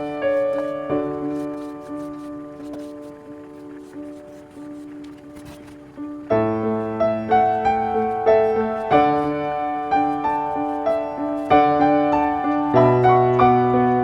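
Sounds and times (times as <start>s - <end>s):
gentle piano melody: 0.0s - 14.0s.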